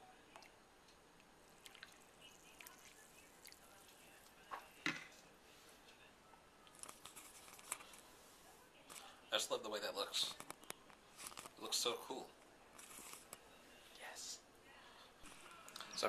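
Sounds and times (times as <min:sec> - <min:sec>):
faint clicks and taps: 0:10.3 - 0:11.6.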